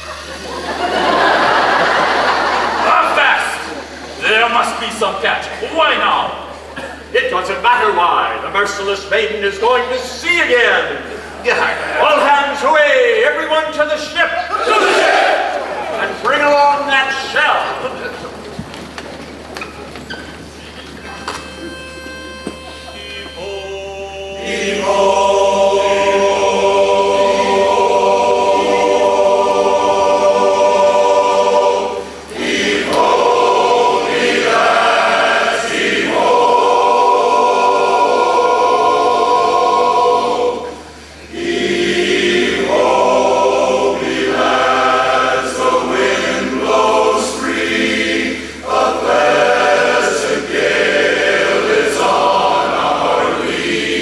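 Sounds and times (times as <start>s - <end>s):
barbershop chorus singing a cappella: 14.5s - 16.1s, 21.5s - 54.0s.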